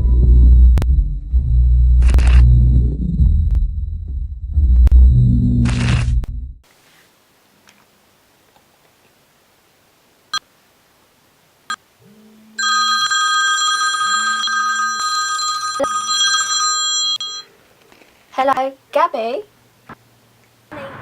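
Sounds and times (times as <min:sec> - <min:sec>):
phone ringing: 0:12.6 - 0:17.5.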